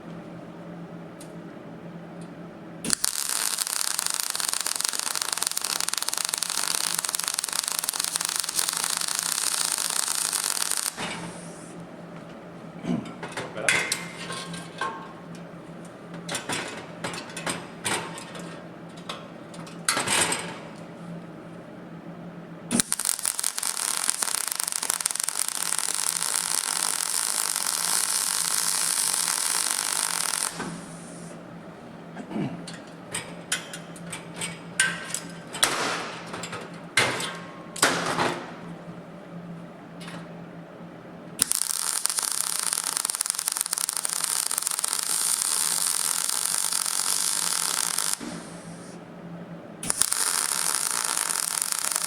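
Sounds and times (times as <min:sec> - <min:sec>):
welding arc crackling: 0:02.8 - 0:11.7, 0:22.7 - 0:31.3, 0:41.4 - 0:49.0, 0:49.8 - 0:52.0
short crackling bursts and clicks: 0:02.9 - 0:11.0, 0:22.7 - 0:30.6, 0:41.4 - 0:48.3, 0:49.9 - 0:52.0.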